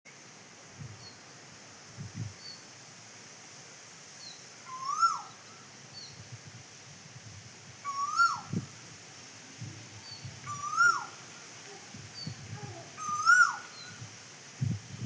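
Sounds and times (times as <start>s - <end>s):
cuckoo calling: 4.7s - 5.4s, 7.8s - 8.5s, 10.0s - 14.0s.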